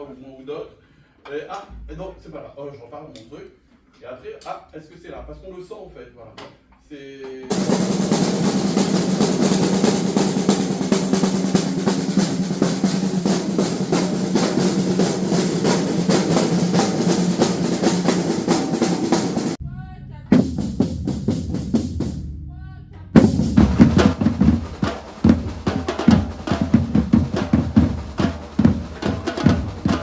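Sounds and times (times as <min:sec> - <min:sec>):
drum ensemble playing: 0:07.5 - 0:30.0.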